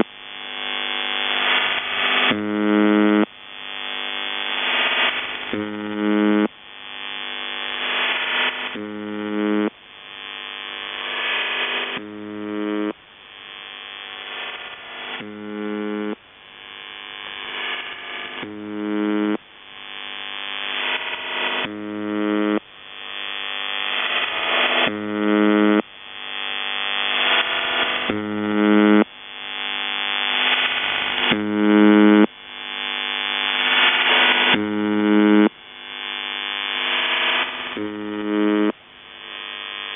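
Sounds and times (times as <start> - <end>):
harsh radio buzz: 0.0 - 39.9
warbling modem hiss: 4.4 - 6.5, 7.1 - 9.7, 10.7 - 13.0, 13.8 - 16.2, 17.4 - 19.4, 20.4 - 25.8, 26.5 - 35.5, 36.1 - 39.9.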